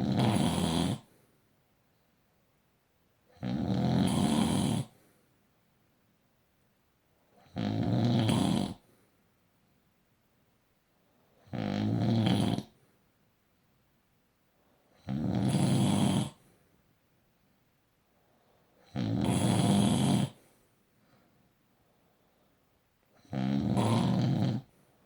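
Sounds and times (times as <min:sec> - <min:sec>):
person snoring: 0:00.0 - 0:01.1, 0:03.4 - 0:05.0, 0:07.4 - 0:08.8, 0:11.4 - 0:12.8, 0:15.0 - 0:16.4, 0:18.8 - 0:20.4, 0:23.2 - 0:24.7.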